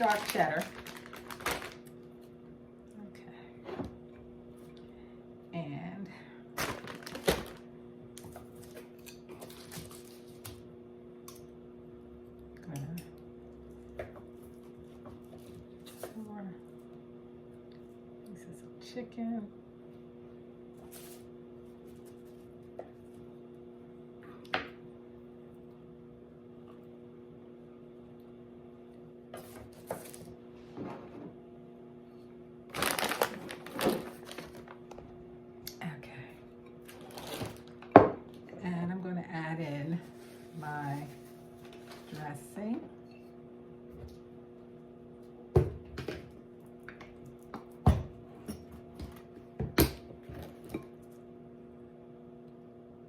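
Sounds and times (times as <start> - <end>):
food packaging crinkling: 0.0 - 2.0, 6.6 - 7.7, 32.7 - 35.0, 36.9 - 37.8
low electrical hum: 0.0 - 53.0.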